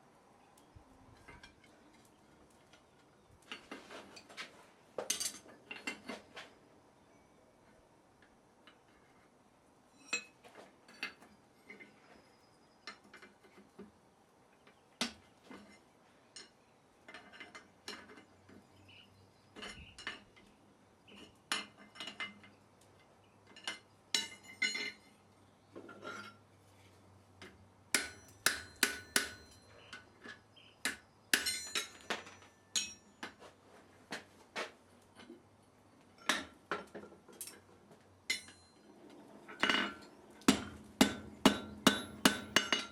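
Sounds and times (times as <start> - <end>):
hammer striking steel on anvil: 28.0 - 29.7, 30.8 - 32.2, 32.8 - 33.0, 40.5 - 42.9.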